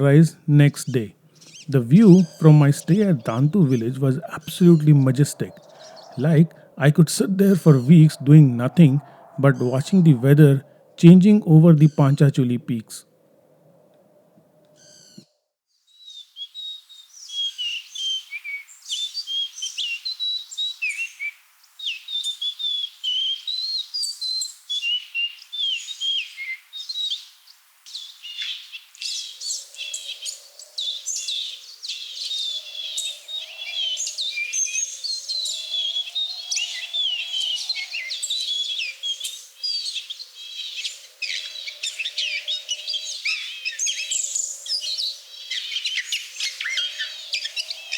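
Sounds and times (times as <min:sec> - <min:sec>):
birds chirping and trilling: 0:00.0 - 0:15.2, 0:27.9 - 0:47.9.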